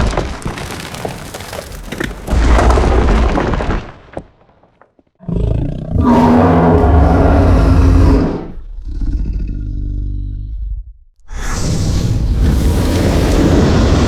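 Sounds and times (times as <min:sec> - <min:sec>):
deep growling roar: 0:05.2 - 0:14.0
dragon roar: 0:05.2 - 0:14.0.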